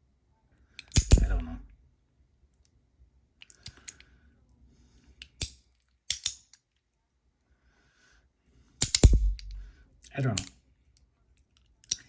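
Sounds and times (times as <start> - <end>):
metal fidget slider clicks: 5.2 - 6.6.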